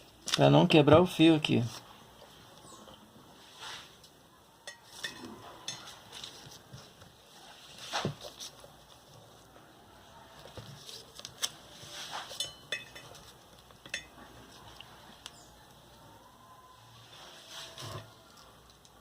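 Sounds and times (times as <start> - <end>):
small clicks and rustles of handling: 18.0 - 19.0.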